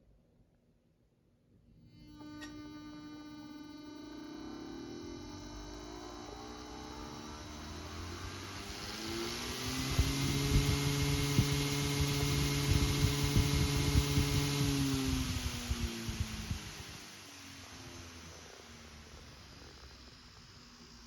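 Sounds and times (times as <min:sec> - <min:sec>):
electric motor humming: 0:02.0 - 0:21.0.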